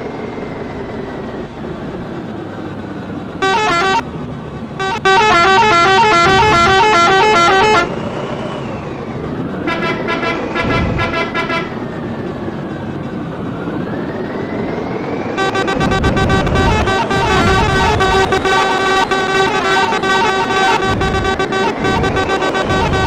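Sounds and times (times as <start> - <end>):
musical vehicle horn melody: 3.4 - 4.1, 4.8 - 8.0, 9.6 - 12.0, 15.4 - 23.0.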